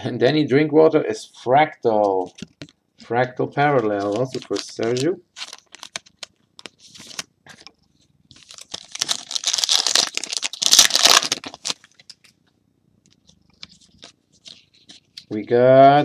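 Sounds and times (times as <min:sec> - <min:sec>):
foil wrapper tearing and crinkling: 0:04.1 - 0:07.3, 0:08.4 - 0:12.1.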